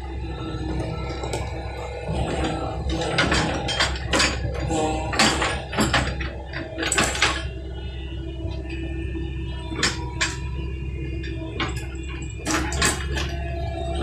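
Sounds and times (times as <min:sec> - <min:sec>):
backhoe engine running: 0:00.0 - 0:14.0
metallic clanks: 0:00.7 - 0:07.5, 0:11.2 - 0:13.4.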